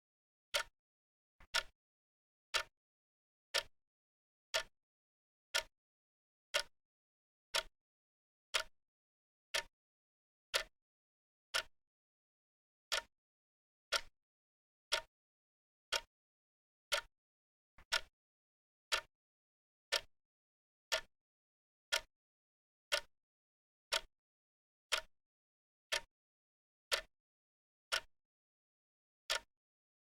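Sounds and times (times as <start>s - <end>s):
clock ticking: 1.5s - 1.7s, 2.5s - 2.7s, 4.5s - 4.7s, 6.5s - 6.7s, 7.5s - 7.7s, 8.5s - 8.7s, 12.9s - 13.1s, 13.9s - 14.1s, 17.9s - 18.1s.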